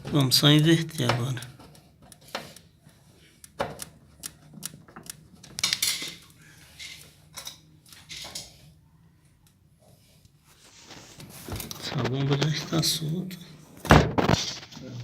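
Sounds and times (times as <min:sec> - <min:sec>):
hand tools and metal parts clattering: 0:05.6 - 0:08.6.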